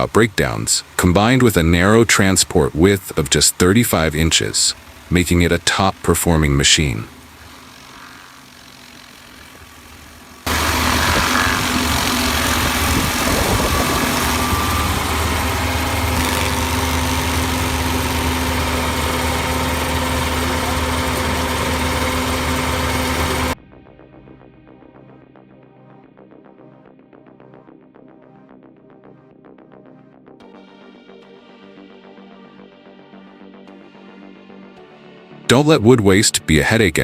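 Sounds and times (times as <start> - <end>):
low hum: 0.0 - 23.6
wood-processing machine running: 0.0 - 23.6.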